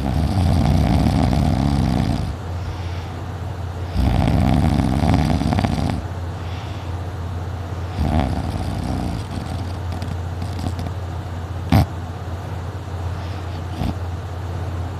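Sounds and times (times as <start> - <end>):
rattling snores: 0.0 - 2.4, 3.9 - 6.1, 7.9 - 11.0, 11.7 - 11.9, 13.3 - 14.0.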